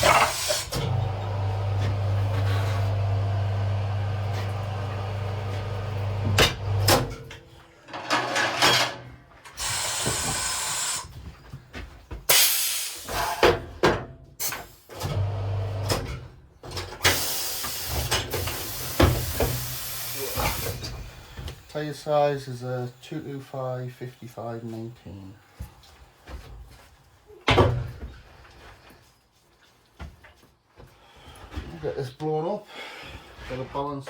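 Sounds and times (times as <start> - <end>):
compressed air hisses: 0.0 - 0.7, 9.6 - 11.1, 12.3 - 13.4, 17.1 - 25.3
low motor hum: 0.8 - 6.9.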